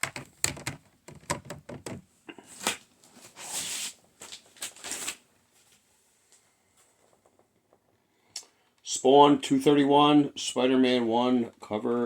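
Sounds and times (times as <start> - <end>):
plastic cases clicking and clacking: 0.0 - 2.1.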